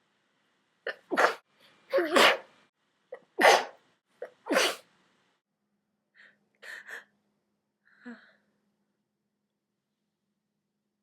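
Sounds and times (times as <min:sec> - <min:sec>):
woman sneezing: 0:00.9 - 0:02.5, 0:03.4 - 0:04.8.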